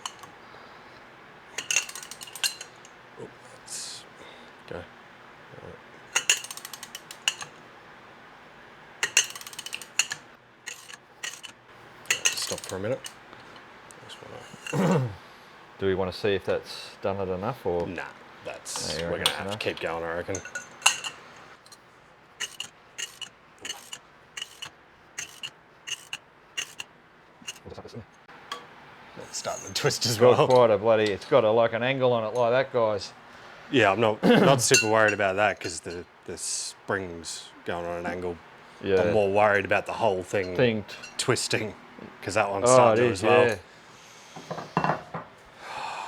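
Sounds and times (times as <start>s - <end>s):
ratchet wrench clicking: 1.6s - 2.9s, 6.1s - 7.6s, 9.0s - 13.2s, 22.4s - 27.6s.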